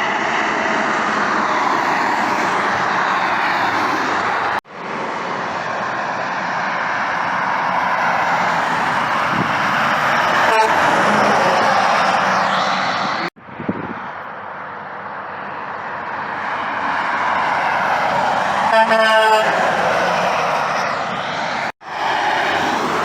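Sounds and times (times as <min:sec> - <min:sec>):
highway traffic passing: 0:00.0 - 0:23.0.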